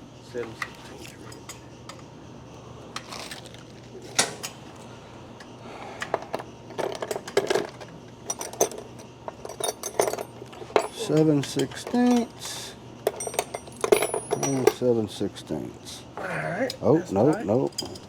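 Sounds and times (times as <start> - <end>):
steady low hum: 0.0 - 18.0
metal tools clinking: 6.3 - 15.0, 16.7 - 18.0.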